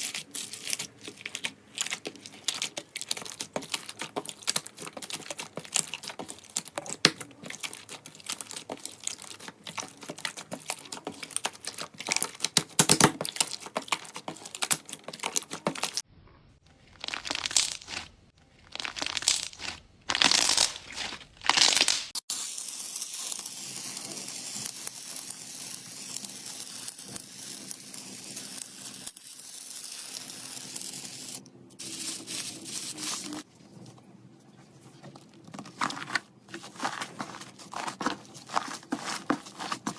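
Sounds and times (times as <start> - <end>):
slime crackling and popping: 0.0 - 16.0, 16.8 - 31.4
slime squishing: 0.0 - 16.0, 16.7 - 22.0, 30.0 - 39.9.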